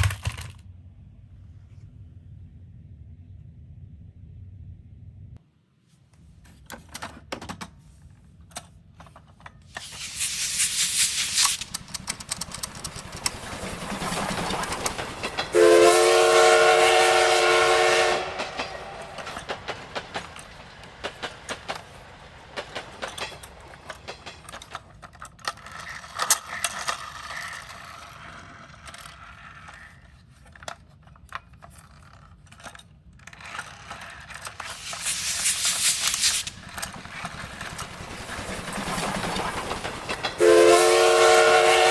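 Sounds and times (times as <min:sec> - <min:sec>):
toy cars clicking and clattering: 0:00.0 - 0:00.6, 0:08.5 - 0:15.6, 0:18.4 - 0:40.4
hissing noise bursts: 0:09.8 - 0:15.7, 0:34.6 - 0:40.4
horn-like chord: 0:15.5 - 0:18.7.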